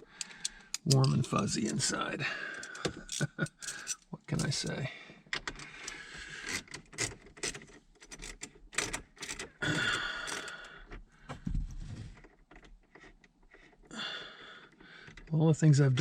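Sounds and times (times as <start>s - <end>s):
clicks and rattles of car trim: 6.4s - 9.6s.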